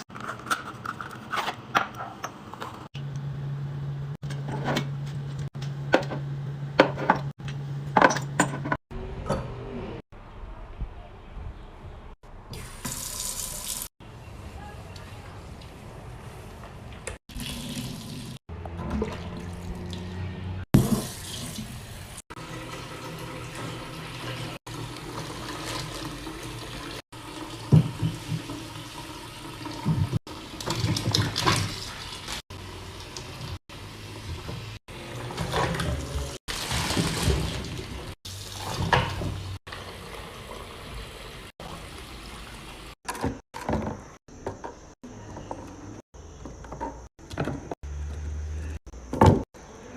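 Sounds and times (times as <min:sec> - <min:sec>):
tap water running into sink: 0:17.3 - 0:18.4, 0:20.8 - 0:32.3.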